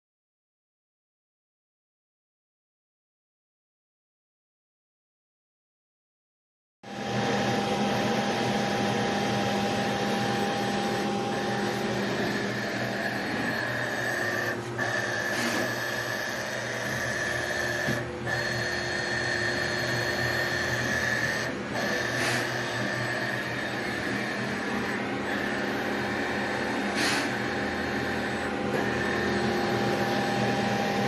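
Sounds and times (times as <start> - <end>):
machine whine: 6.9 - 31.0.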